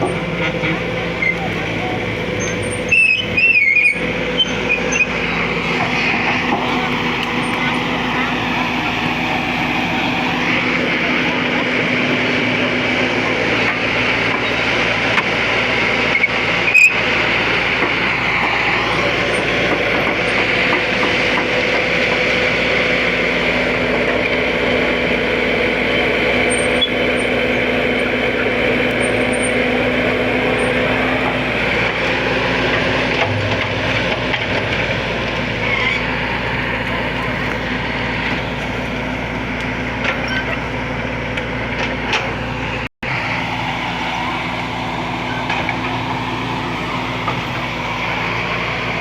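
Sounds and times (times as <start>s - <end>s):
heavy engine running: 0.0s - 49.0s.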